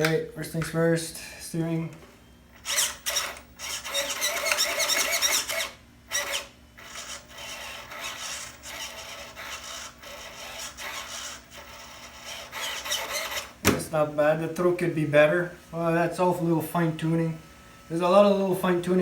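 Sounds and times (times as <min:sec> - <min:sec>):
servo whining in bursts: 0:02.2 - 0:14.4
electric motor whirring: 0:02.5 - 0:14.2.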